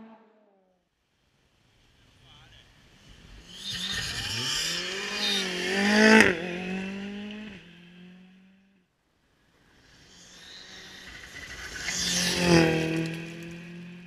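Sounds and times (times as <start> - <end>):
rally car passing at speed: 0.0 - 0.6, 2.7 - 8.9, 9.6 - 14.0.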